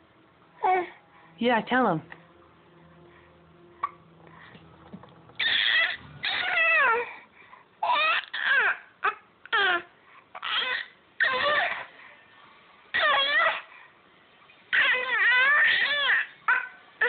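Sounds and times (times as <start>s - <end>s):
baby crying: 5.4s - 7.2s, 7.8s - 11.9s, 12.9s - 13.7s, 14.7s - 16.8s.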